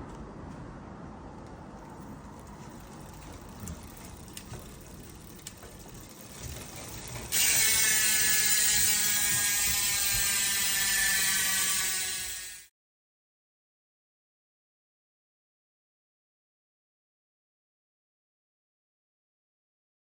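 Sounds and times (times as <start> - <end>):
bicycle freehub ratcheting: 1.8 - 12.7.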